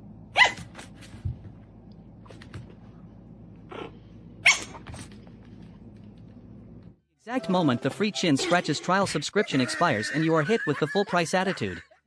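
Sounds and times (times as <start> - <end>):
steady low hum: 0.0 - 7.0
dog barking: 0.4 - 0.7, 4.4 - 4.8.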